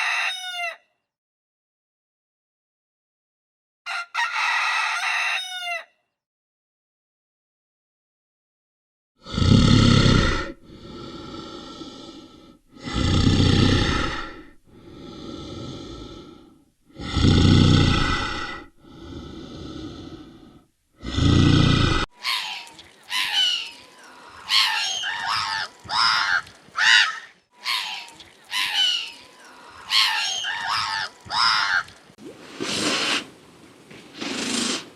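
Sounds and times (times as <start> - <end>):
large animal calling loudly: 22.2 - 32.0
birds chirping: 22.2 - 32.2.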